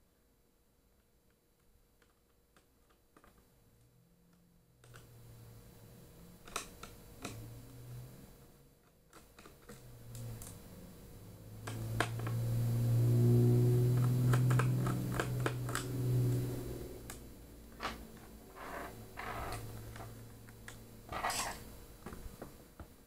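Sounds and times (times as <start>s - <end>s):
low hum: 9.8s - 22.0s.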